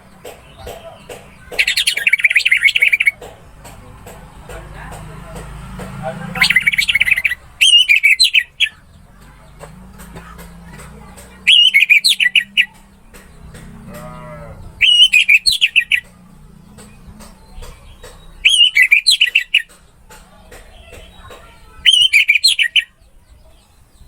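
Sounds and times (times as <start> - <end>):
bird singing warbled notes: 0.0 - 3.2, 6.2 - 8.9, 11.4 - 12.8, 14.1 - 17.2, 18.2 - 19.7, 21.8 - 23.1
wavering bird call: 0.5 - 3.2, 6.4 - 8.9, 11.4 - 12.8, 14.0 - 16.1, 18.4 - 19.7, 21.8 - 23.1.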